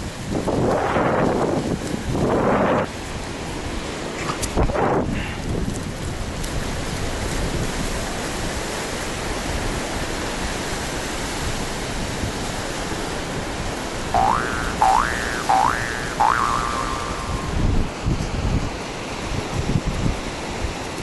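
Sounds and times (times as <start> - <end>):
ocean surf on a beach: 0.0 - 21.0
short upward sweeping tone: 14.2 - 17.7.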